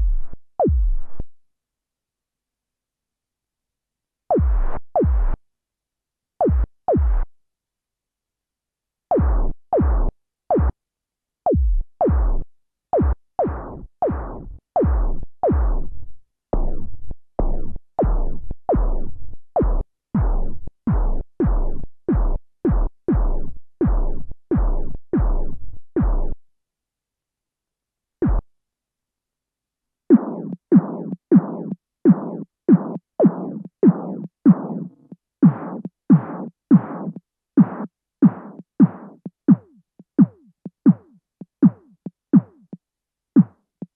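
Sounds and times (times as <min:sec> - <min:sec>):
synthesized snare drum hits: 0:00.0 - 0:01.2, 0:04.3 - 0:05.4, 0:09.1 - 0:10.7, 0:18.0 - 0:26.4, 0:28.2 - 0:28.4.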